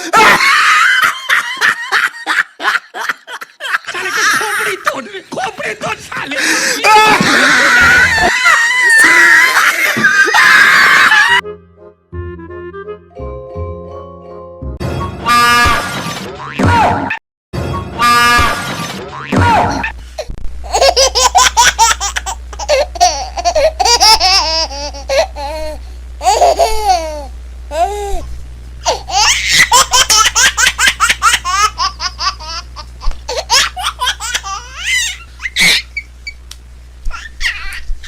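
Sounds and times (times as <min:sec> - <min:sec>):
high-pitched laughing: 0:00.0 - 0:11.4, 0:20.7 - 0:28.2, 0:28.8 - 0:36.4, 0:37.1 - 0:38.0.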